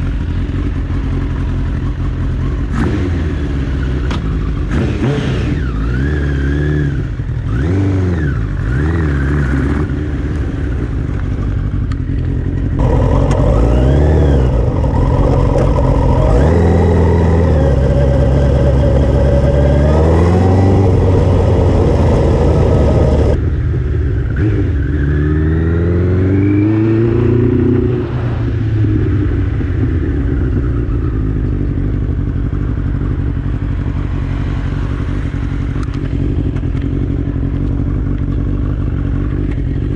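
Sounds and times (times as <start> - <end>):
motorcycle engine revving: 0.0 - 39.9
wind rush: 26.5 - 31.4.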